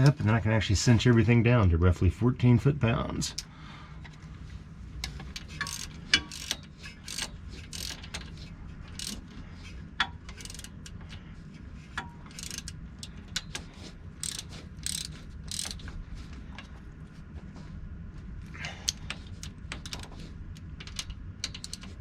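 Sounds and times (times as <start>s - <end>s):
sharp metal clicks: 5.0s - 9.3s, 10.0s - 11.2s, 12.0s - 15.9s, 18.8s - 22.0s
hand ratchet clicking: 5.0s - 9.4s, 10.1s - 11.2s, 12.0s - 15.9s, 18.9s - 22.0s.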